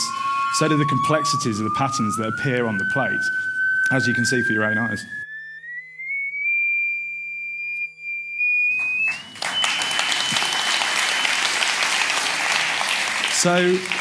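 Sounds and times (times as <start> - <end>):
pure sine tone rising: 0.0 - 11.2
audience applause: 8.8 - 14.0.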